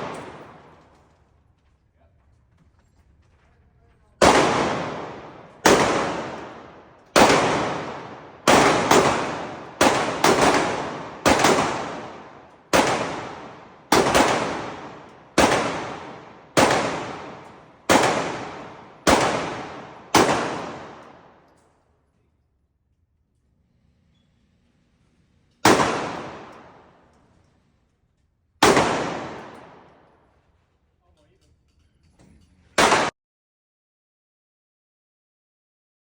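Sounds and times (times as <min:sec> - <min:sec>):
gunshots with echo: 0:00.0 - 0:00.9, 0:04.2 - 0:21.4, 0:25.6 - 0:27.1, 0:28.6 - 0:30.2, 0:32.8 - 0:33.1.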